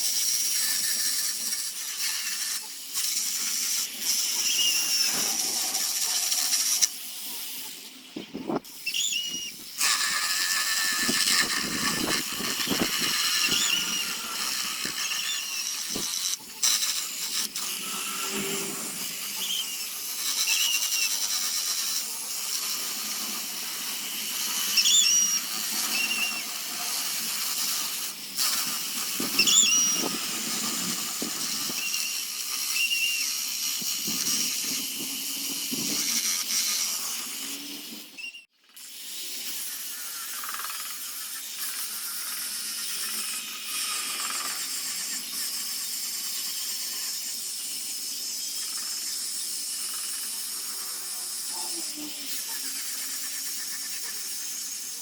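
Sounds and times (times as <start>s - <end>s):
high squeals: 3.8s - 6.1s, 8.8s - 16.8s, 29.2s - 30.2s
power tool working wood: 9.0s - 38.2s.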